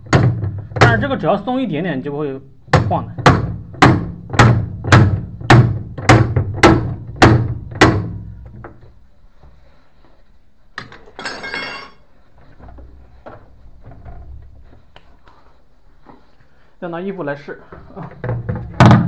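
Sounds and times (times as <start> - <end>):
heavy hollow thunks: 0.0 - 1.3, 2.7 - 9.7, 17.7 - 19.0.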